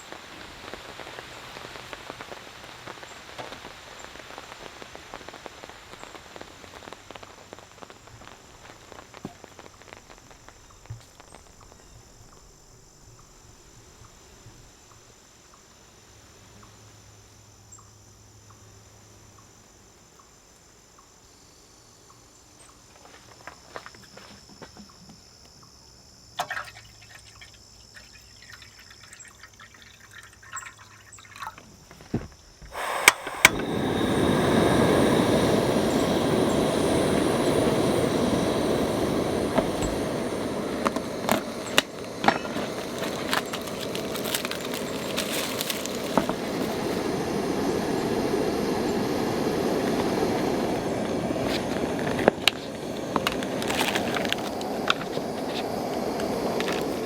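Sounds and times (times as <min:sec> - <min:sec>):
heavy rain hiss: 0:00.0 - 0:16.4, 0:32.6 - 0:57.0
insects chirring: 0:00.0 - 0:57.0.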